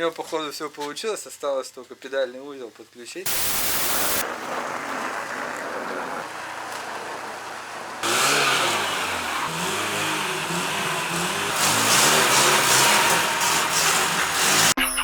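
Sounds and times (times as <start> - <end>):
constant hiss: 2.9 - 4.2
car engine revving: 3.3 - 4.2, 8.0 - 14.8.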